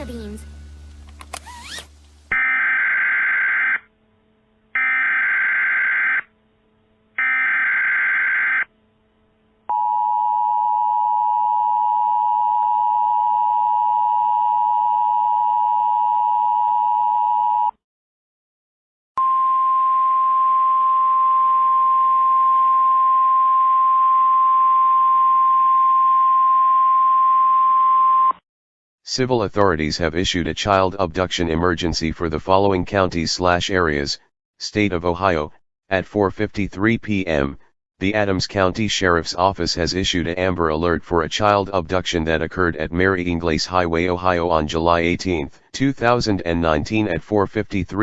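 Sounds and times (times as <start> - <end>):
steady alarm tone: 2.3 - 3.9, 4.7 - 8.8.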